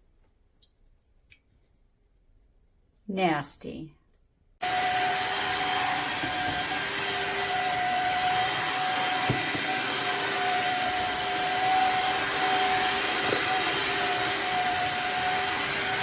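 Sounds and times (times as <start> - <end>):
vacuum mop motor whine: 4.6 - 16.0.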